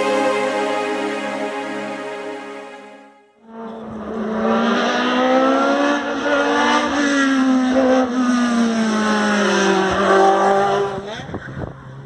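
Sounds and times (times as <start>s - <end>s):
race car engine at high revs: 3.5s - 11.9s.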